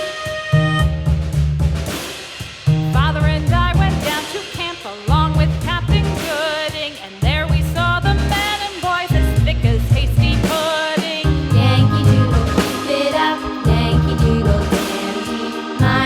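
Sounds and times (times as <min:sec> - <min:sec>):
drum and bass beat: 0:00.0 - 0:16.0
person singing a melody: 0:10.7 - 0:16.0.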